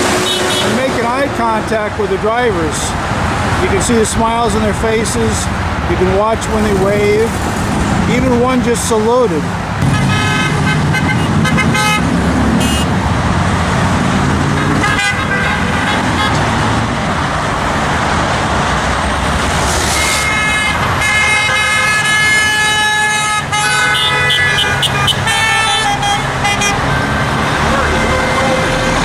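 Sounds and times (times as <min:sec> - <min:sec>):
car horns honking: 0:00.0 - 0:01.0, 0:09.8 - 0:13.0, 0:14.5 - 0:16.8, 0:19.9 - 0:29.0
highway traffic: 0:00.0 - 0:29.0.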